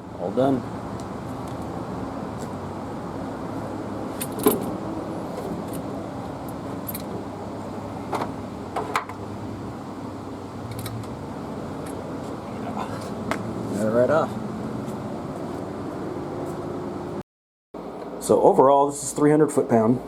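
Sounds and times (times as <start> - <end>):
steady low hum: 0.0 - 17.2.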